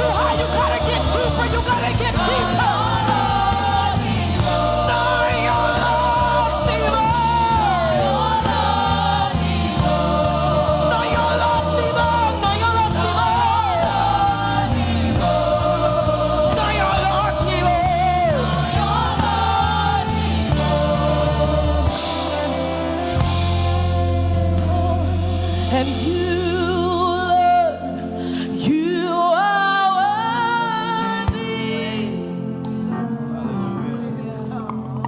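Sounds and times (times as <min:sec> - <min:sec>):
band with bass and drums: 0:00.0 - 0:29.2
group of singers with vibrato: 0:00.0 - 0:33.7.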